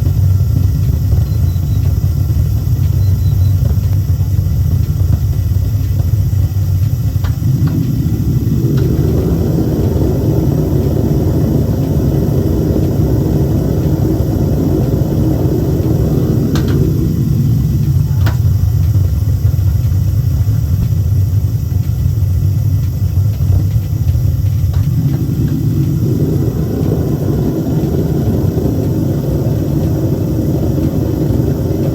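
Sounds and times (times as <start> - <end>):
furnace burner rumbling: 0.0 - 31.9.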